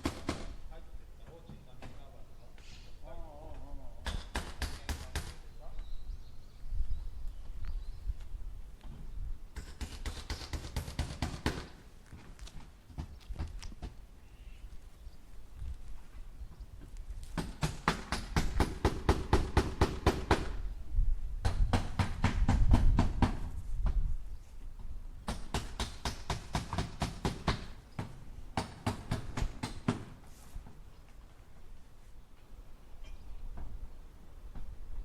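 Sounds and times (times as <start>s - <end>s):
hammer driving nails into wood: 4.0s - 5.4s, 9.6s - 11.8s, 17.4s - 20.6s, 25.3s - 30.2s.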